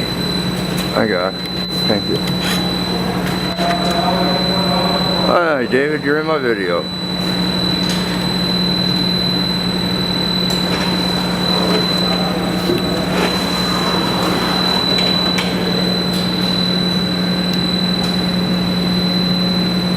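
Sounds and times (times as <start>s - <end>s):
grinder machine running: 0.0s - 18.8s.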